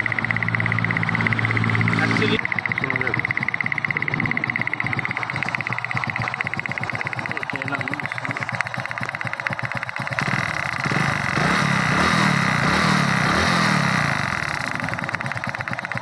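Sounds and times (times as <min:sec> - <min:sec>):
motorcycle engine idling and revving: 0:00.0 - 0:16.0.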